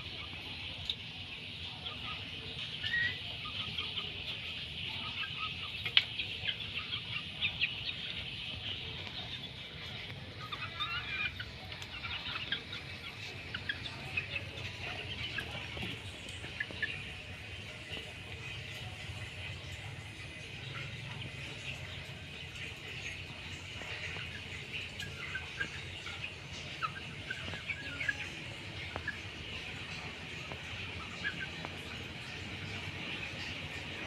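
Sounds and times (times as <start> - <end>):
chickens clucking: 0.0 - 34.0.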